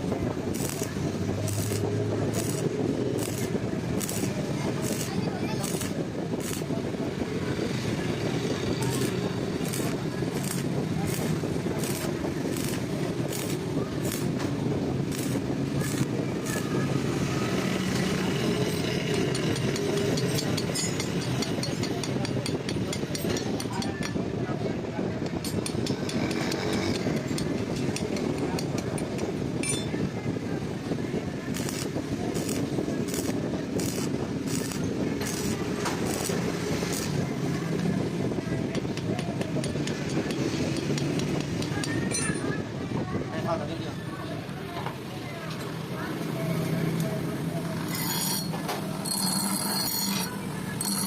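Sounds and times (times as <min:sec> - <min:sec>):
low workshop and traffic rumble: 0:00.0 - 0:51.0.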